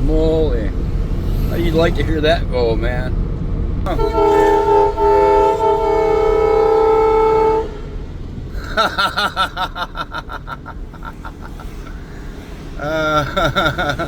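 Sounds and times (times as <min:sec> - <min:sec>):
air horn chord: 0:03.9 - 0:08.2.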